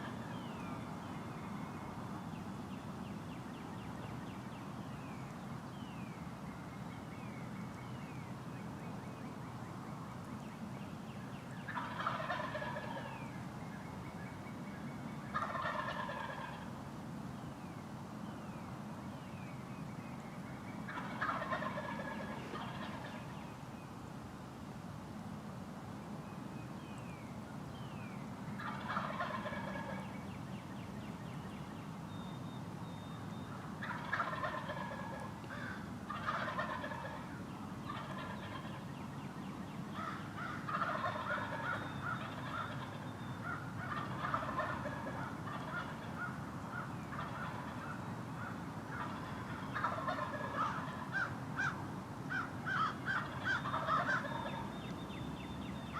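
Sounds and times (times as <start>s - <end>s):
turkeys gobbling: 11.7s - 13.2s, 15.3s - 16.7s, 20.9s - 23.3s, 28.6s - 30.2s, 33.8s - 38.8s, 39.9s - 54.9s.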